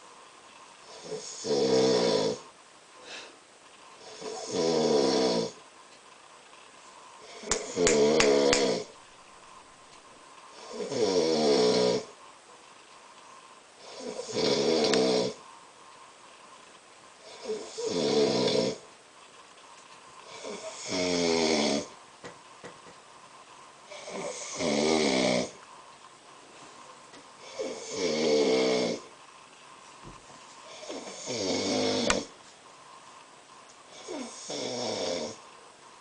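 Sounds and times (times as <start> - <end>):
man snoring: 0.8 - 2.5, 4.0 - 5.6, 7.2 - 8.9, 10.5 - 12.1, 13.8 - 15.4, 17.2 - 18.8, 20.3 - 21.9, 23.9 - 25.6, 27.4 - 29.1, 30.7 - 32.3, 33.9 - 35.4
quiet breathing: 2.4 - 4.6.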